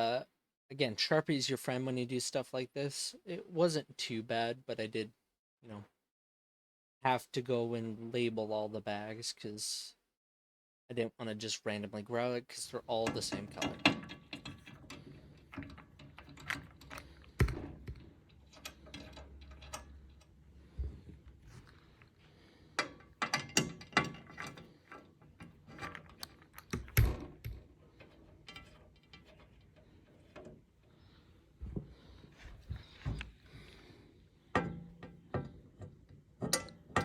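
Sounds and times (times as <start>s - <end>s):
clicks taps and rattles of pc case: 13.1s - 20.3s, 22.8s - 29.6s, 34.6s - 37.0s.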